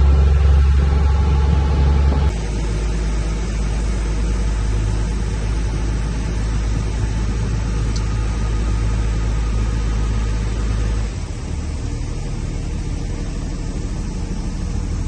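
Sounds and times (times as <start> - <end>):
vehicle running rumble and hum: 0.0 - 15.0.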